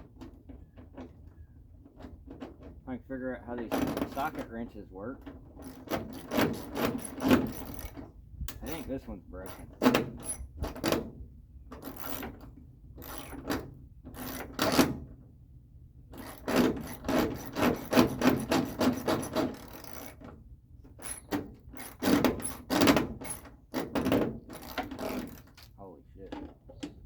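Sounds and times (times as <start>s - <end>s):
socket ratchet wrench rasping: 13.0s - 13.6s, 16.2s - 20.2s.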